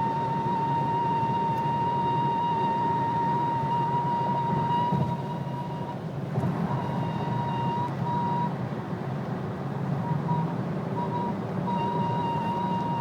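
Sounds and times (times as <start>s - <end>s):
high-pitched vehicle whine: 0.0s - 13.0s.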